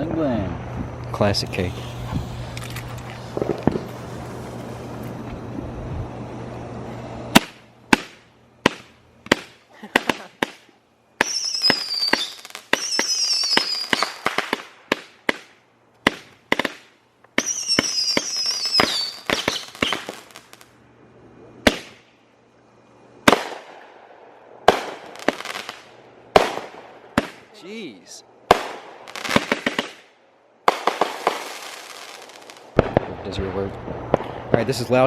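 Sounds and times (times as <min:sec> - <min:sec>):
firework bangs: 0:00.7 - 0:05.7, 0:07.2 - 0:20.7, 0:21.6 - 0:22.2, 0:23.2 - 0:27.6, 0:28.4 - 0:35.0
crackling firework shots: 0:00.9 - 0:05.7, 0:07.2 - 0:20.8, 0:21.6 - 0:22.2, 0:23.2 - 0:27.8, 0:28.4 - 0:35.0
falling firework whistles: 0:01.4 - 0:05.5, 0:07.3 - 0:15.5, 0:17.4 - 0:20.7.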